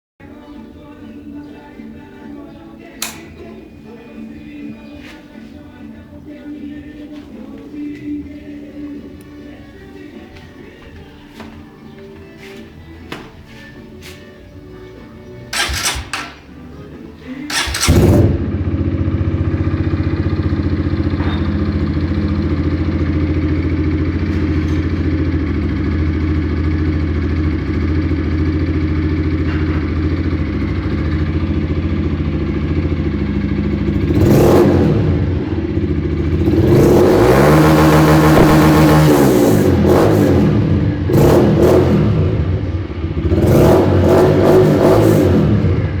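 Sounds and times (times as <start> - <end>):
motorcycle engine idling and revving: 15.5 - 46.0.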